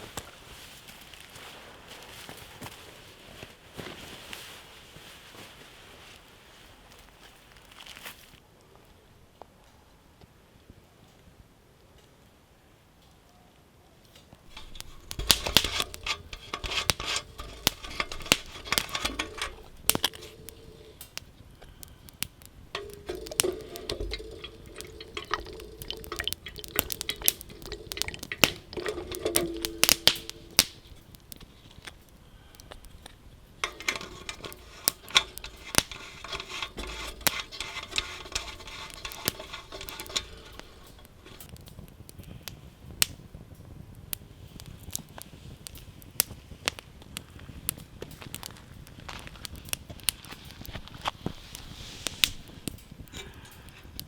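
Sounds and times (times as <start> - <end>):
utensil scraping cookware: 14.5 - 21.1, 22.7 - 31.0, 33.6 - 41.6.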